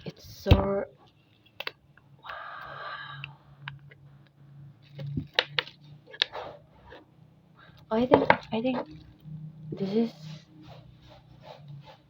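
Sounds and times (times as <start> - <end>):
rustling scrape: 6.3 - 7.1, 10.0 - 12.0.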